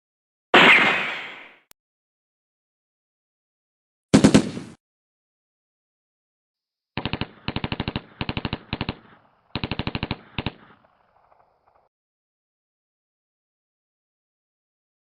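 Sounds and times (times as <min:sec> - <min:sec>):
loud single bang: 0:00.6 - 0:01.6
automatic gunfire bursts: 0:04.1 - 0:04.8, 0:07.0 - 0:11.4.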